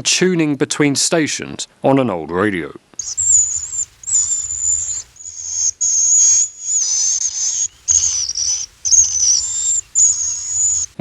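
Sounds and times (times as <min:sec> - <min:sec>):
bats chirping and squeaking: 0:03.0 - 0:11.0.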